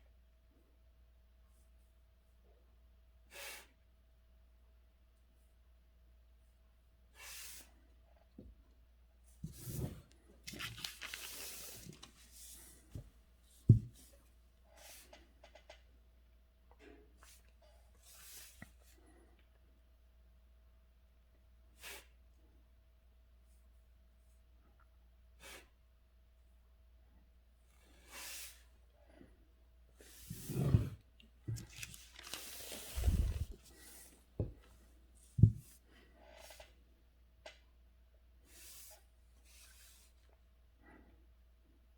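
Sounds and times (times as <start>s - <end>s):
brush and paper swishes: 9.4s - 13.0s, 30.0s - 34.2s
soft thuds: 12.9s - 14.2s, 35.4s - 35.8s
dull thumps: 13.7s - 14.1s.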